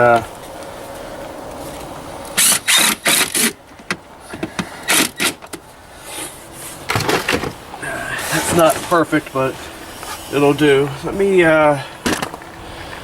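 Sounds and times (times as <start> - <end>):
impact driver driving screws: 2.4 - 3.6, 4.9 - 5.4.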